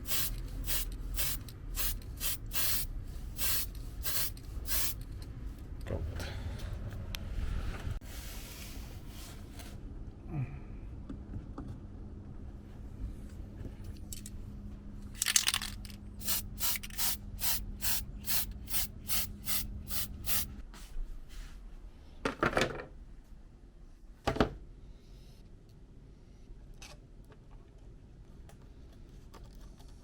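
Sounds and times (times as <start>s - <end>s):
spray paint can hissing: 0.0s - 5.1s, 16.2s - 20.5s.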